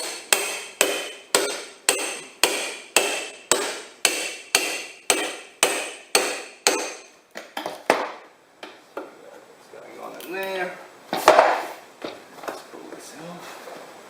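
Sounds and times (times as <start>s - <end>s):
hammer striking metal crowbar: 0.0s - 7.1s.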